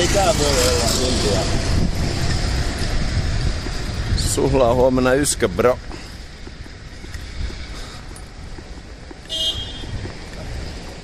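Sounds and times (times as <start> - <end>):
rumble of street traffic: 0.0 - 11.0
high-pitched vehicle horn toot: 9.3 - 10.0.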